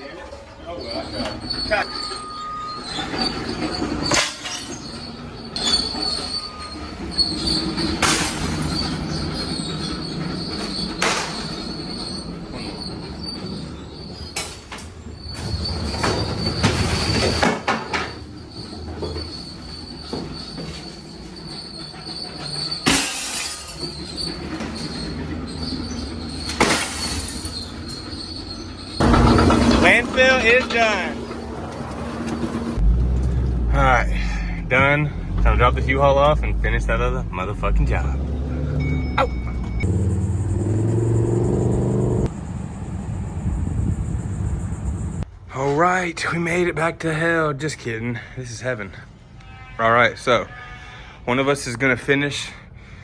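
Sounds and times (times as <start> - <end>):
high metallic squeal: 0.6 - 45.3
steady rumble: 27.2 - 45.3
junk crashing onto pile: 29.0 - 30.3.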